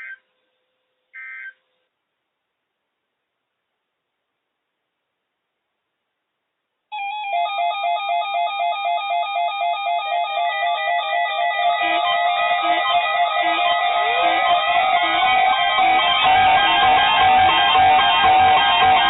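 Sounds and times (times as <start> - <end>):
fast repeating melodic music: 7.0 - 19.0.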